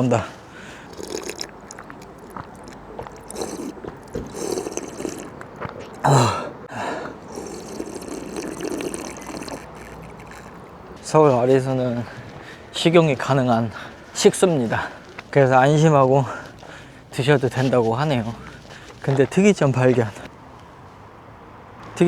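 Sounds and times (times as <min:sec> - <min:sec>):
water running from a tap: 0:00.9 - 0:05.4, 0:07.3 - 0:10.7.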